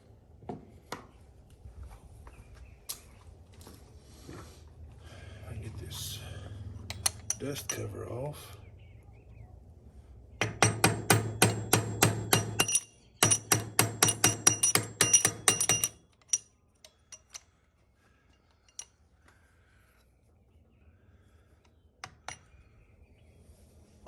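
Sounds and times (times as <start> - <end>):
ringing metal-on-metal tapping: 6.9 - 7.8, 10.4 - 16.5.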